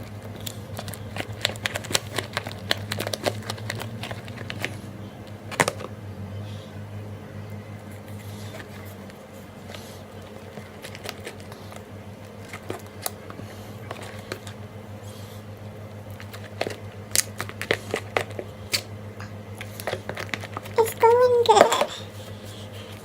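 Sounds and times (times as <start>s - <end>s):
slime squishing and crackling: 0.0s - 4.8s
steady low hum: 0.0s - 23.0s.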